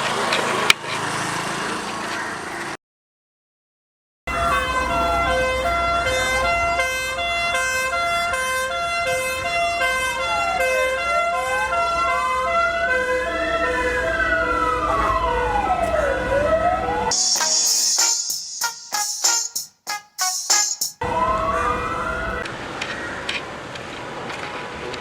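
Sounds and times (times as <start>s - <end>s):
siren wailing: 4.3s - 19.0s, 21.0s - 22.5s
two-tone hi-lo siren: 4.3s - 22.5s.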